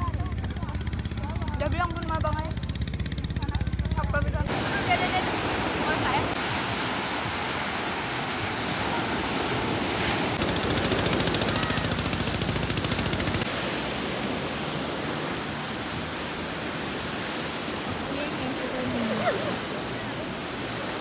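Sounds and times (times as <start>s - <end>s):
ocean surf: 4.5s - 21.0s
rapid even rattle: 10.4s - 13.5s.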